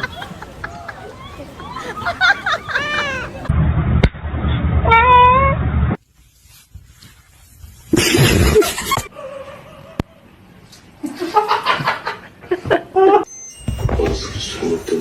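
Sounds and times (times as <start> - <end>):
cat meowing: 2.4 - 3.5, 4.8 - 5.6.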